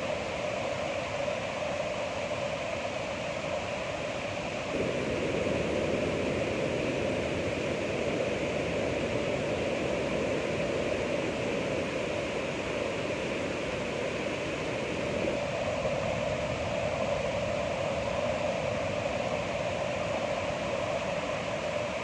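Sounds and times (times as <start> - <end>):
ocean surf rushing: 4.7 - 19.6.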